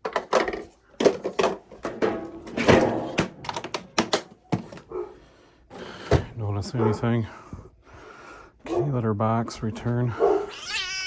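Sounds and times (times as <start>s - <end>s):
hard objects knocking and clattering: 0.0s - 4.9s.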